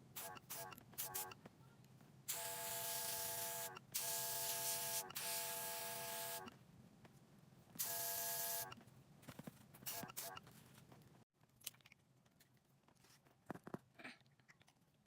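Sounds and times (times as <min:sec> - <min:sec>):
air hissing from airbrush: 0:02.3 - 0:06.5.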